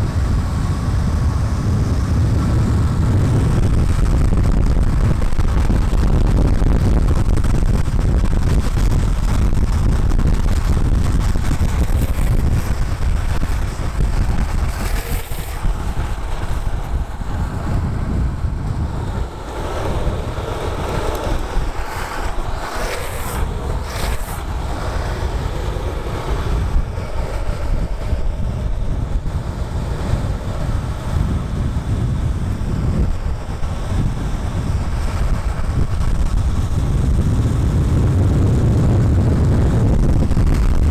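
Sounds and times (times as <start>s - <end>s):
skateboard wheels rolling on asphalt: 0.0s - 40.9s
wind buffeting microphone: 0.0s - 40.9s
wheels sliding hiss: 10.7s - 38.1s.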